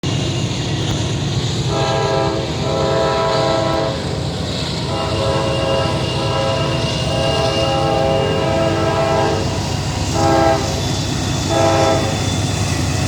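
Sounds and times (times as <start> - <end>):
train rumble: 0.0 - 13.0
locomotive air horn blasts: 1.7 - 4.1, 4.9 - 12.2.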